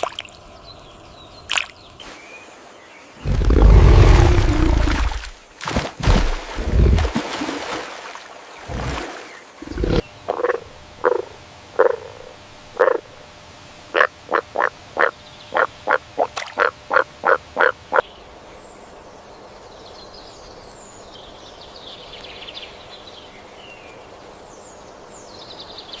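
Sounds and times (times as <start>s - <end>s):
loud rough low bursts: 3.2s - 5.3s
frog croaking: 9.6s - 13.2s, 13.9s - 18.0s.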